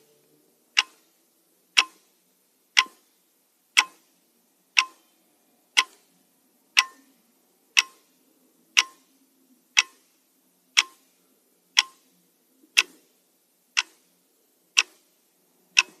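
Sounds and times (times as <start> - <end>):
pendulum clock ticking: 0.7 - 4.1, 4.7 - 5.2, 5.8 - 6.1, 6.7 - 7.1, 7.8 - 9.1, 9.7 - 11.1, 11.7 - 12.1, 12.7 - 13.1, 13.7 - 14.1, 14.7 - 16.0.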